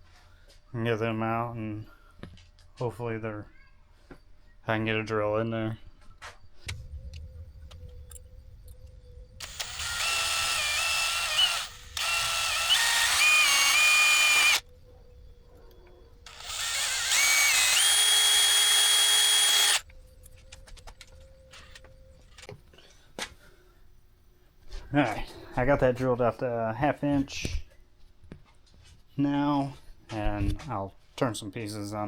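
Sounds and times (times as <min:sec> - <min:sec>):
electric drill whining: 0:09.4 - 0:14.6, 0:16.3 - 0:19.9.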